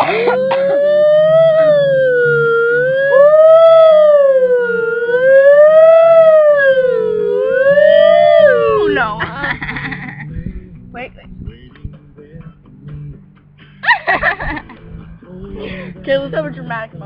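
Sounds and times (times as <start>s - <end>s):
voice imitating siren wail: 0.0s - 9.2s.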